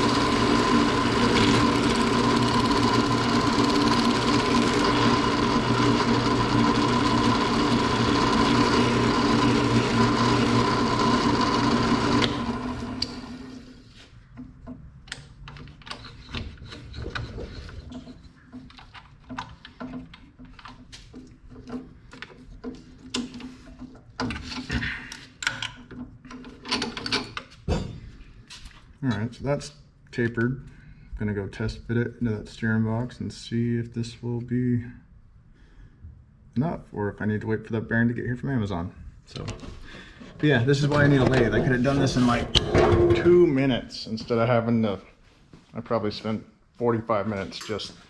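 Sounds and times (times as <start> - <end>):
drill press humming: 0.0 - 13.7.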